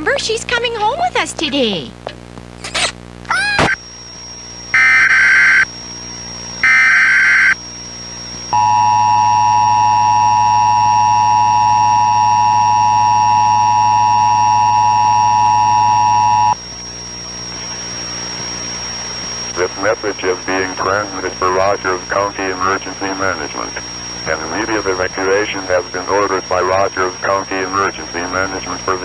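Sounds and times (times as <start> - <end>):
faint high whine: 2.0 - 29.0
screeching data bursts: 2.6 - 7.6, 8.3 - 29.0
low hum: 7.9 - 29.0
two-tone attention signal: 8.6 - 16.6.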